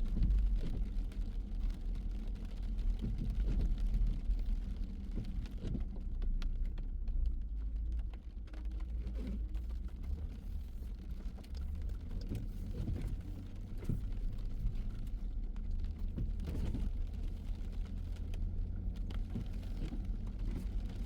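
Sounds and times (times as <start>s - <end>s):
car road and engine rumble: 0.0s - 21.0s
raindrops ticking on car: 0.0s - 21.0s.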